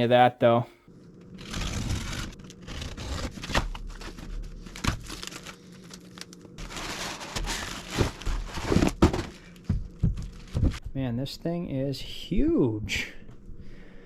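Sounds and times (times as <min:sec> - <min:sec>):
packaging crinkling: 0:01.3 - 0:10.8.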